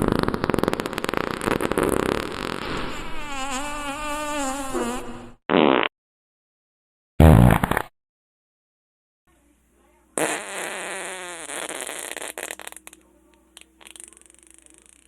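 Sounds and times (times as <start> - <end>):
sputtering fart sound: 0.0 - 5.9, 7.2 - 7.9, 10.2 - 13.0, 13.6 - 15.0.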